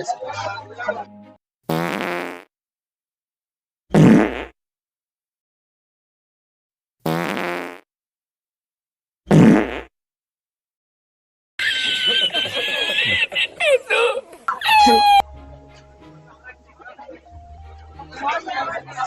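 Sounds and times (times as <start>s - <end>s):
fake fart sound effect: 1.7s - 2.5s, 3.9s - 4.6s, 7.0s - 7.9s, 9.3s - 10.0s.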